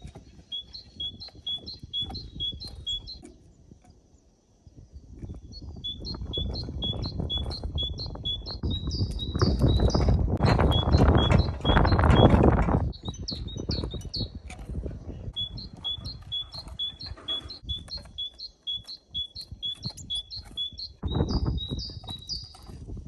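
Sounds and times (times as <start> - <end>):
small birds chirping: 0.0 - 23.0
low rumbling noise: 6.0 - 18.2.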